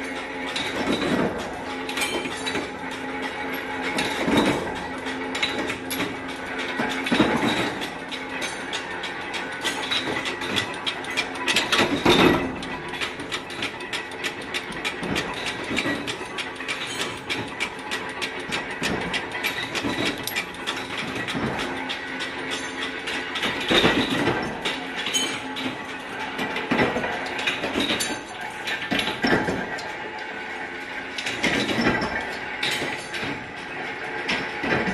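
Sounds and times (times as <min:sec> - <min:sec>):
machinery clicking rapidly: 0:00.0 - 0:34.9
mechanical clattering: 0:00.1 - 0:34.9.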